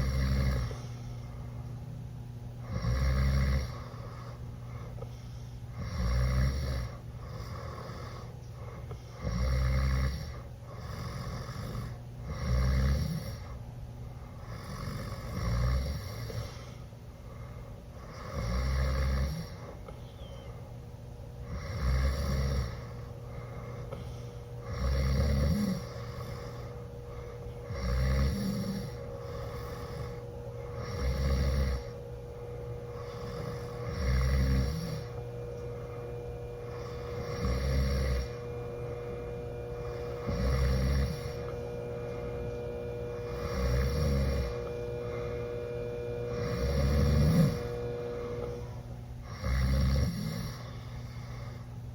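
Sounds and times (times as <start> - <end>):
boy snoring loudly: 0.0 - 0.8, 2.6 - 4.3, 5.8 - 8.3, 9.2 - 13.6, 14.4 - 16.6, 18.0 - 19.8, 21.4 - 23.0, 24.6 - 32.0, 32.9 - 35.2, 36.6 - 38.4, 39.8 - 41.5, 43.1 - 45.4, 46.3 - 50.8.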